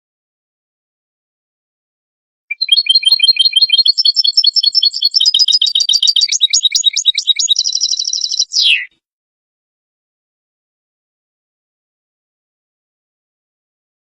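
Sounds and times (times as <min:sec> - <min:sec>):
goldfinch singing: 0:02.5 - 0:08.9.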